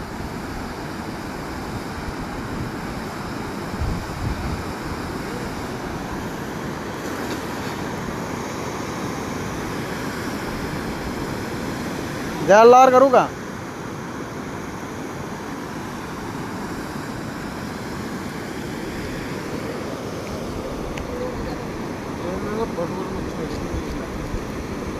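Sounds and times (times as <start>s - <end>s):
wind buffeting microphone: 0.0s - 8.0s, 23.1s - 24.9s
wind and water rushing: 0.0s - 24.9s.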